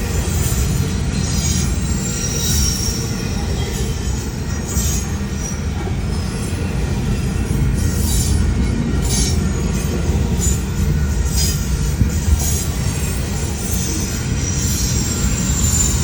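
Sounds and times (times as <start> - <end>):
railway cars rumbling past: 0.0 - 16.0
high-pitched wheel squeals: 0.3 - 5.8, 10.4 - 16.0.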